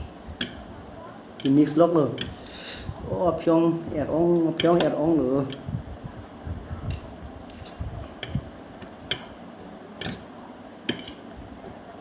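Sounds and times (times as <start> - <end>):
utensils clinking against bowl: 1.4 - 2.5, 4.5 - 5.7, 6.9 - 11.4.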